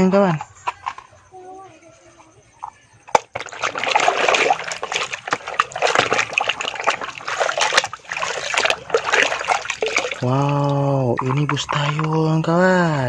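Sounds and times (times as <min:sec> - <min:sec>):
water splashing and sloshing: 0:02.6 - 0:12.7.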